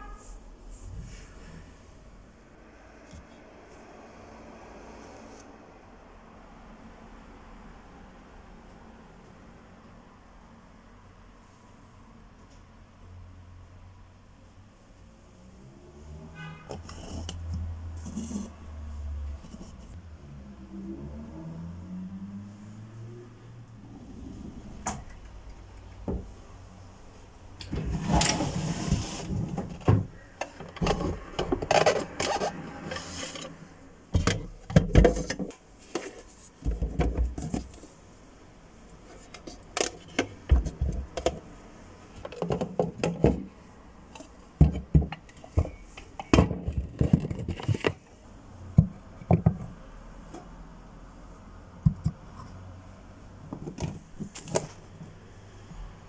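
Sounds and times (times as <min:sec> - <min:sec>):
objects rubbing: 0:16.7 - 0:20.0.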